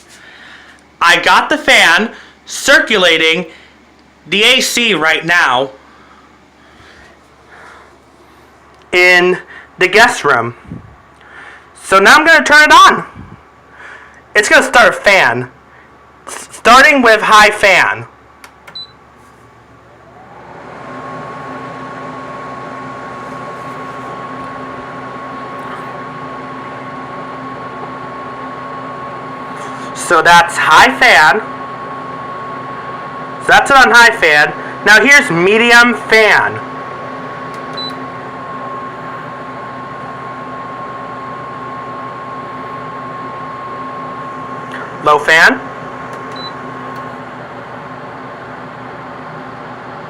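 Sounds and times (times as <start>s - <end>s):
air conditioner fan running: 0.0s - 50.0s
air conditioner clicks: 18.4s - 19.0s, 37.5s - 38.0s, 46.1s - 47.2s.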